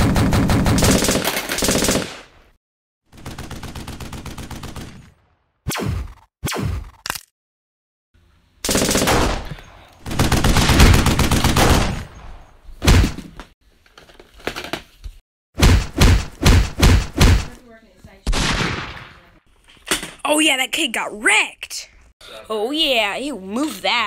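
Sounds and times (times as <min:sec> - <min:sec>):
machine gun bursts: 0:00.0 - 0:02.2, 0:08.7 - 0:09.4.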